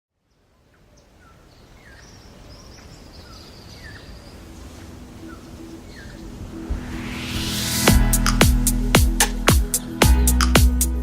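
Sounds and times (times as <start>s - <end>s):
birds chirping: 0.3s - 6.9s.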